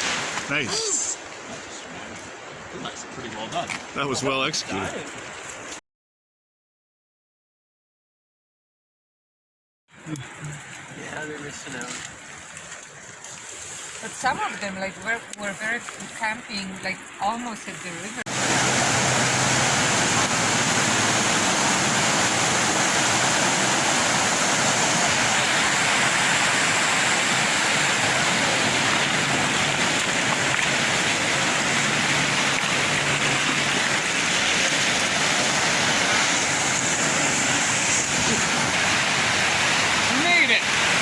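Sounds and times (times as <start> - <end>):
steady rushing noise: 18.1 - 41.0.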